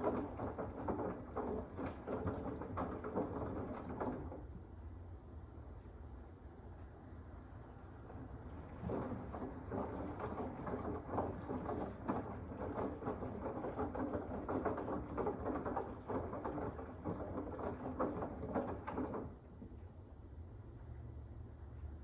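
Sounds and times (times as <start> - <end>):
washing machine rattling: 0.0 - 4.4, 8.1 - 19.4
washing machine low hum: 0.0 - 4.8, 7.9 - 20.4.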